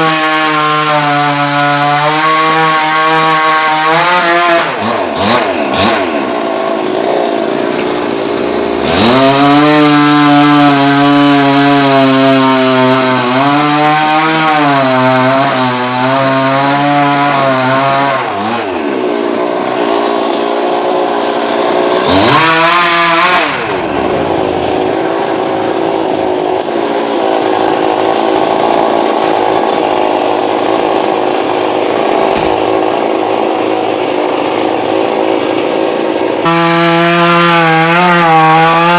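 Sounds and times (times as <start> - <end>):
chainsaw engine revving: 0.0 - 38.9.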